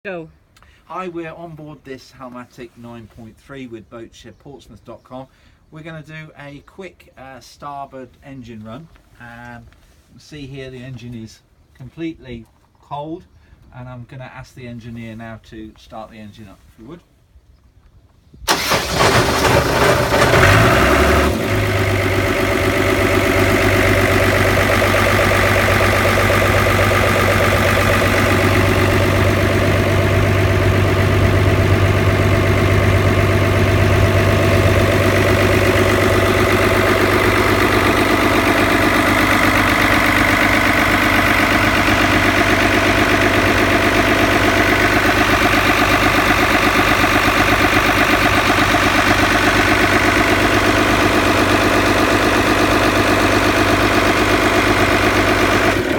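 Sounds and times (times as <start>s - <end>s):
boat engine idling: 18.5s - 55.9s.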